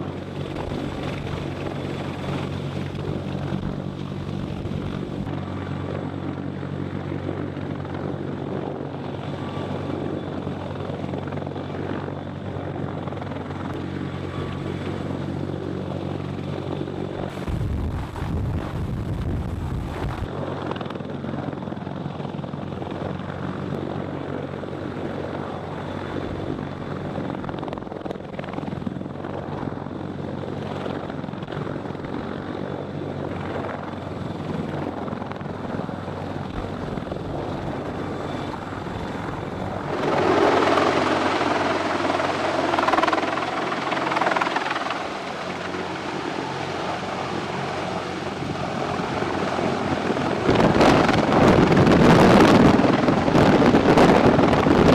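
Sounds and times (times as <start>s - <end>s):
helicopter droning: 0.0s - 54.9s
rushing noise: 17.2s - 20.3s.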